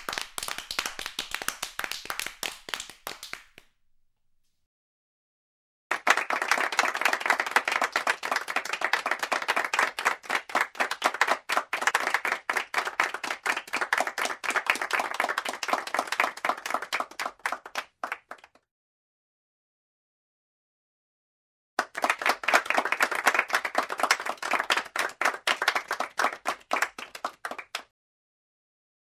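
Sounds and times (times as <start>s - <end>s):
people clapping: 0.0s - 3.8s, 5.9s - 18.7s, 21.8s - 27.9s.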